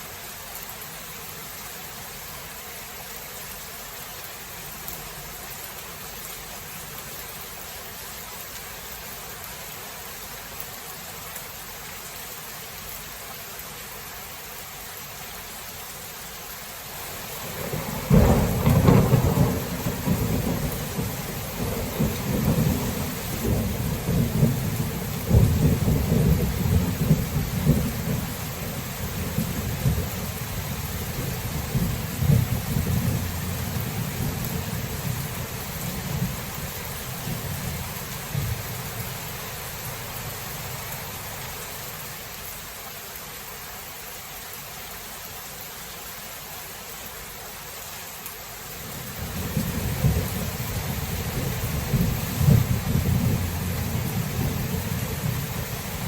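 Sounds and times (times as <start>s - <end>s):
steady rain falling: 0.0s - 56.0s
thunder rumbling: 17.4s - 41.2s, 49.1s - 56.0s.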